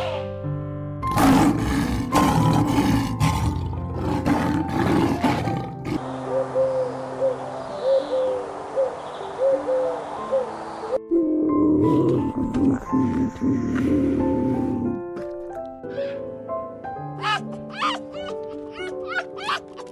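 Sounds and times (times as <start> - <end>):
background music: 0.0 - 19.9
animal roaring and growling: 1.0 - 6.0, 11.1 - 15.3.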